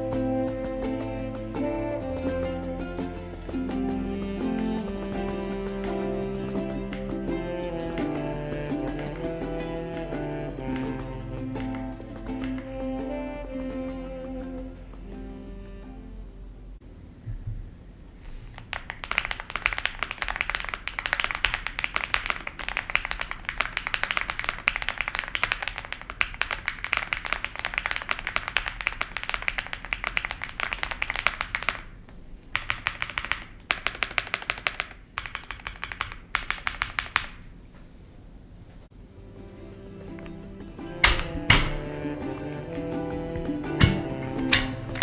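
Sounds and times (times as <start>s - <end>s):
typing on mechanical keyboard: 18.5s - 37.4s.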